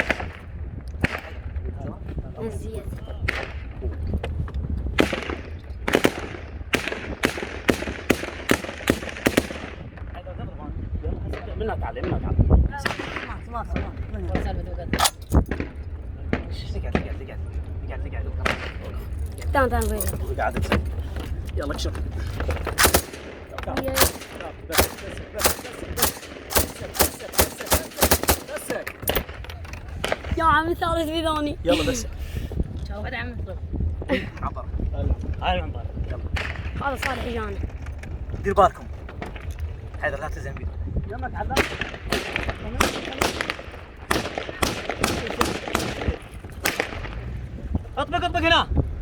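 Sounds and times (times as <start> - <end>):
gunshots with echo: 5.0 - 9.9, 22.8 - 29.4, 41.6 - 47.4.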